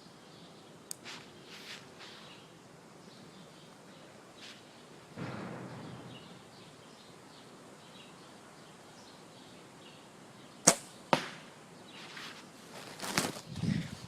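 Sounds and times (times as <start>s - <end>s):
soft rustling: 1.0s - 2.4s, 4.4s - 4.8s, 12.0s - 14.0s
arrow striking target: 5.2s - 6.4s, 10.7s - 11.5s
bow firing snap: 10.6s - 11.5s.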